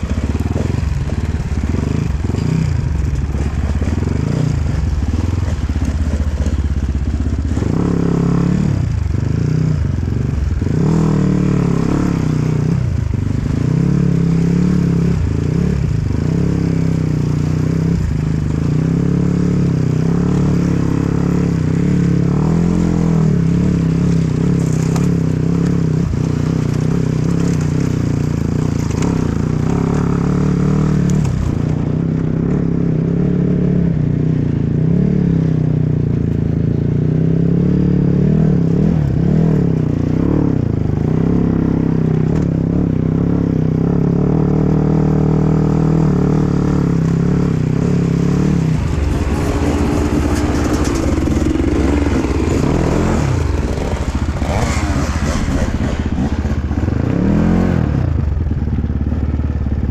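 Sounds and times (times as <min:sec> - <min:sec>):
clatter from rough ground: 0:00.0 - 0:07.9, 0:20.2 - 0:32.0, 0:46.8 - 0:59.8
dirt bike engine revving: 0:00.0 - 0:34.0, 0:37.0 - 0:58.5.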